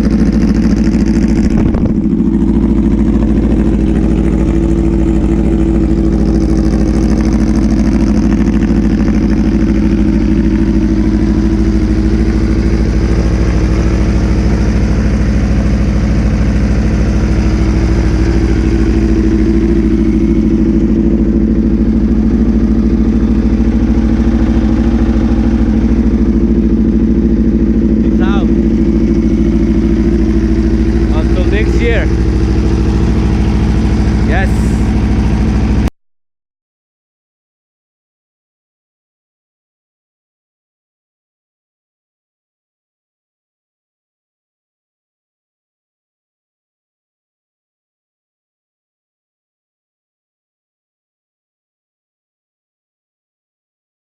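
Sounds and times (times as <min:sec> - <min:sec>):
motorcycle engine idling: 0:00.0 - 0:35.9.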